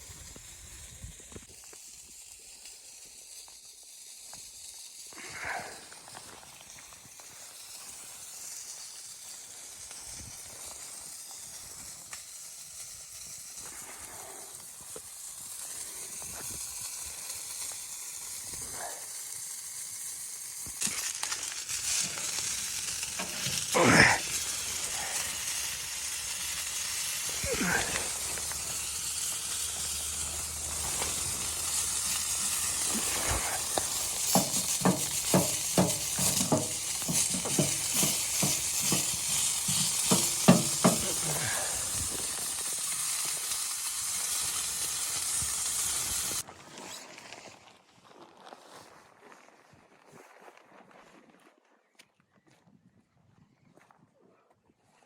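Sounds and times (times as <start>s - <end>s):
food sizzling in a pan: 0.0s - 46.4s
stirring clicks: 20.8s - 25.7s, 27.2s - 41.5s
loud scrape: 27.2s - 41.3s.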